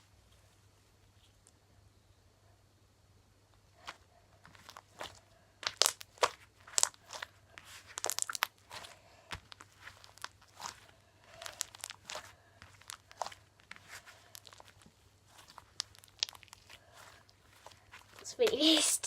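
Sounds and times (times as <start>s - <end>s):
slime squishing with crackling pops: 3.8s - 18.8s.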